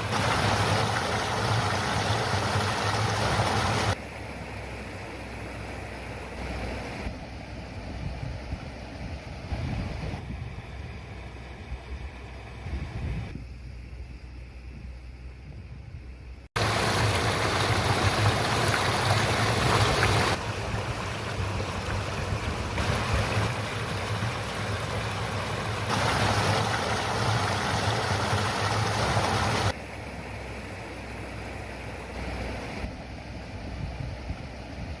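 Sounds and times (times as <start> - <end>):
shallow brook babbling: 0.0 - 6.4, 16.6 - 33.0.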